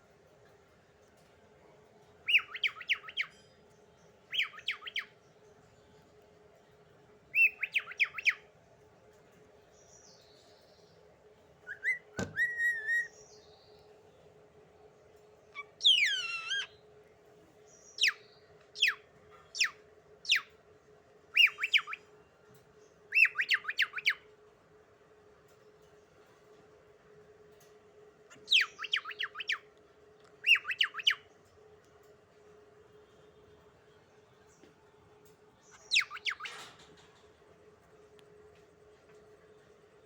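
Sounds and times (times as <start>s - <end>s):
faint steady hum: 0.0s - 40.0s
pet bird chirping and whistling: 2.3s - 3.3s, 4.3s - 5.1s, 7.4s - 8.4s, 11.6s - 13.2s, 15.6s - 16.8s, 18.8s - 19.0s, 19.6s - 20.5s, 21.3s - 22.1s, 23.1s - 24.2s, 28.3s - 29.6s, 30.4s - 31.2s, 35.7s - 36.6s.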